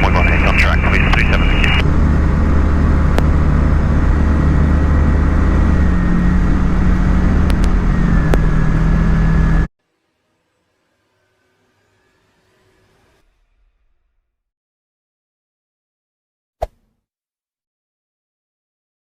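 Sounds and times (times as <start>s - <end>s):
small aeroplane engine droning: 0.0s - 13.2s.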